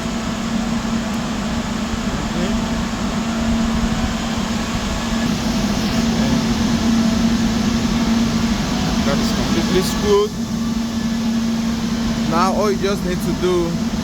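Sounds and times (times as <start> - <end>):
server cooling fans running: 0.0 - 14.0.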